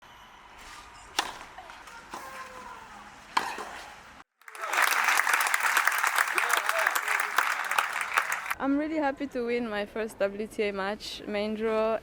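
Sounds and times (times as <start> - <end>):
racket hitting tennis ball: 0.6 - 2.6.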